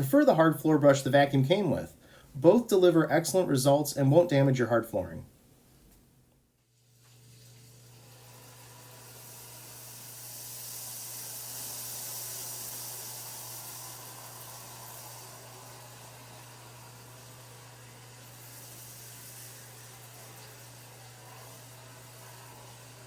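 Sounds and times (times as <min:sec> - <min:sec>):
vacuum cleaner running: 0:07.3 - 0:23.0.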